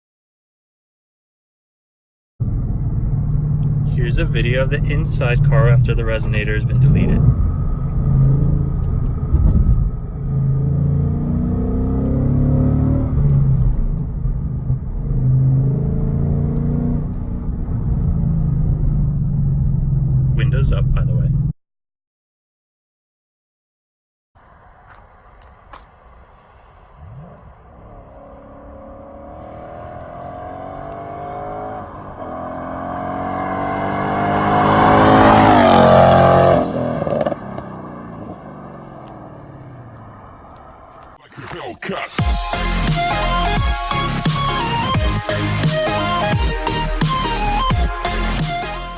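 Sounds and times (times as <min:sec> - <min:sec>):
car exhaust from inside cabin: 0:02.4 - 0:21.5, 0:26.2 - 0:31.0.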